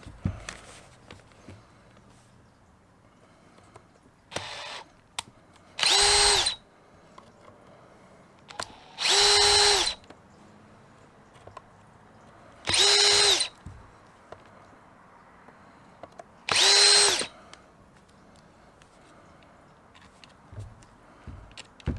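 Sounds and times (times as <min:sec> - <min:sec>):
power drill whining: 0:04.3 - 0:04.9, 0:05.8 - 0:06.6, 0:08.5 - 0:10.1, 0:12.7 - 0:13.7, 0:16.5 - 0:17.4.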